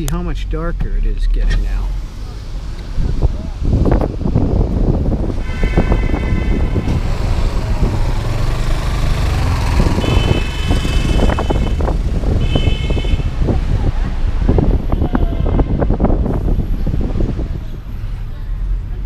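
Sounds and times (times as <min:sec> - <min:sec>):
car road and engine rumble: 0:00.0 - 0:19.0
vehicle horns: 0:05.2 - 0:13.6, 0:14.7 - 0:16.6.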